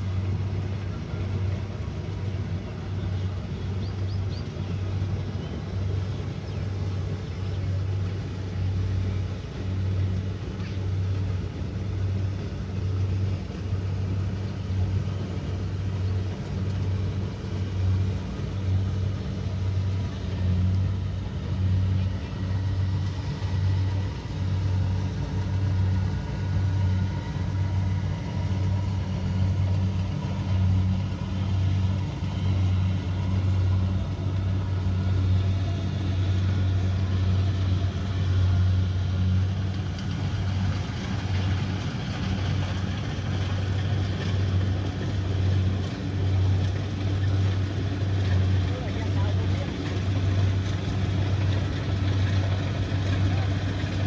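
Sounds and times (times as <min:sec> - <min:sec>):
combine harvester diesel engine: 0:00.0 - 0:54.0.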